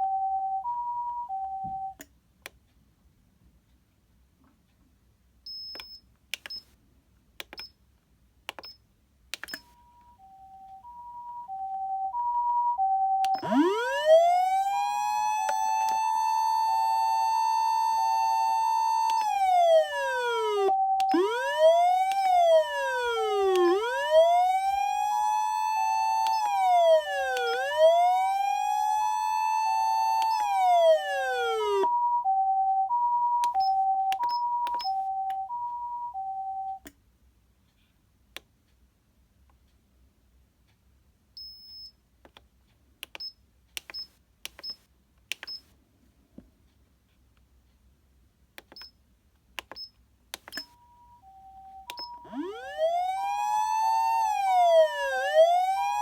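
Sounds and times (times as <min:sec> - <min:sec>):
switch clicks: 0:05.7 - 0:06.7, 0:07.4 - 0:07.8, 0:08.5 - 0:09.7, 0:42.2 - 0:45.6, 0:49.6 - 0:50.8
two-tone ambulance siren: 0:10.2 - 0:36.8, 0:50.8 - 0:56.0
wailing siren: 0:11.5 - 0:34.0, 0:51.2 - 0:56.0.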